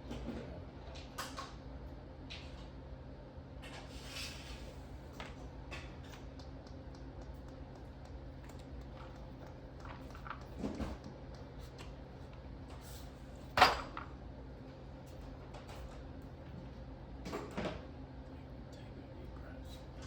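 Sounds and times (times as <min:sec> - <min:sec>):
low electrical hum: 0:00.0 - 0:20.0
small clicks and taps: 0:05.2 - 0:12.4.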